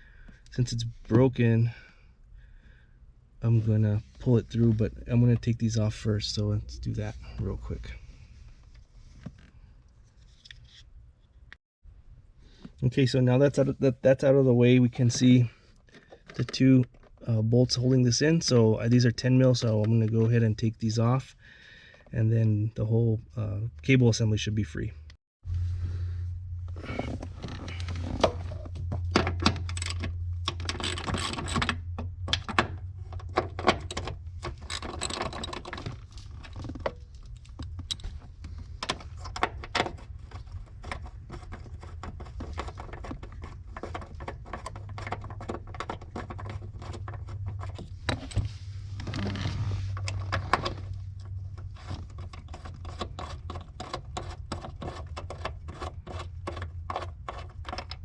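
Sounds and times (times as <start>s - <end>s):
steady low hum: 25.4s - 39.2s
metallic rattles of tools: 26.9s - 38.2s.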